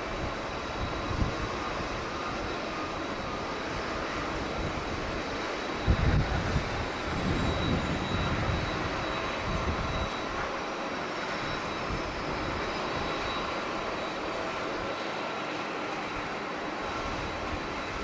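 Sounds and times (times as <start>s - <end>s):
wind buffeting microphone: 0.0s - 10.6s
jet airliner engines passing: 0.0s - 18.0s.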